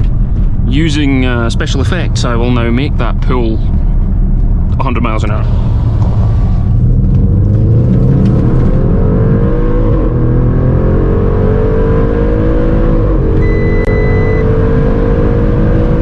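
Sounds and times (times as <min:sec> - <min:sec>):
car engine at full throttle: 0:00.0 - 0:16.0
road rumble: 0:00.0 - 0:16.0
short beep: 0:13.4 - 0:14.6.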